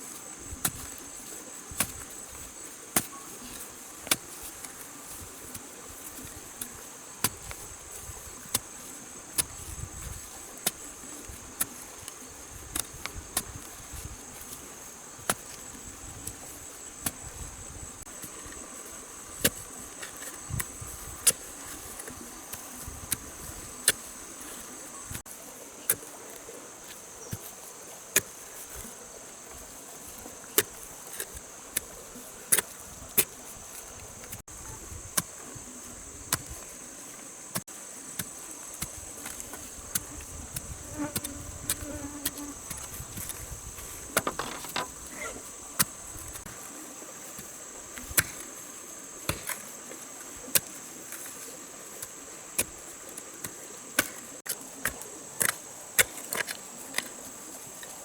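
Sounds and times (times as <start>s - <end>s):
insect chorus: 0.0s - 58.0s
sharp knocks: 44.2s - 45.0s.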